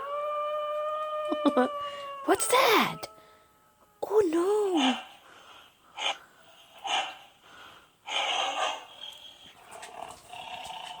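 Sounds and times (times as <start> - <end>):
pet snorting breaths: 4.8 - 11.0.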